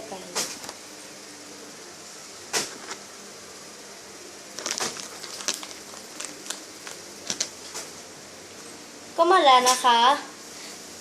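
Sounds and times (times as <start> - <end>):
small objects clicking and rustling: 4.6 - 7.8.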